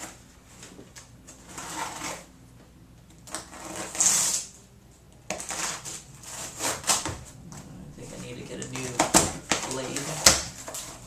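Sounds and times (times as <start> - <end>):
box cutter scraping through cardboard: 1.4 - 2.3, 3.3 - 4.5, 5.3 - 7.2.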